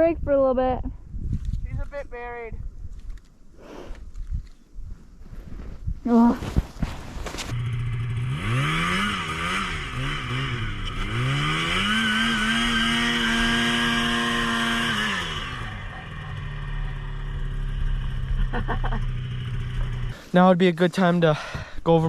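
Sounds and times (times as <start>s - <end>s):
snowmobile engine revving: 7.3s - 20.2s.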